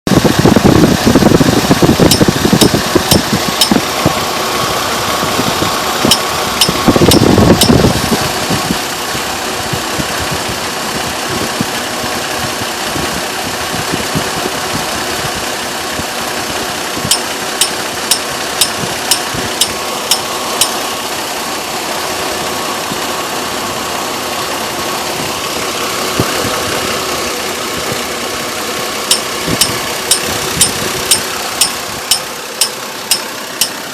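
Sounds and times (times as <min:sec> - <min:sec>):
heavy low rumble: 0:00.1 - 0:32.4
car engine running: 0:00.1 - 0:33.9
sharp engine ticks: 0:02.0 - 0:03.8, 0:06.0 - 0:07.9, 0:16.5 - 0:20.8, 0:29.1 - 0:33.8.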